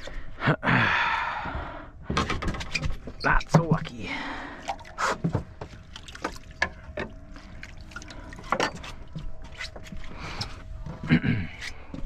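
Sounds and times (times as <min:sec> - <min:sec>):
fishing gear clicks and knocks: 0:02.1 - 0:04.0.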